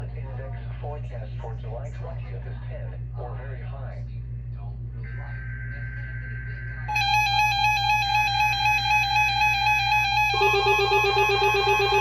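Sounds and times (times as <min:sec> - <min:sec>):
pulsing lower tone: 0:06.9 - 0:12.0
steady electronic alarm tone: 0:06.9 - 0:12.0
two-tone digital data tones: 0:06.9 - 0:12.0.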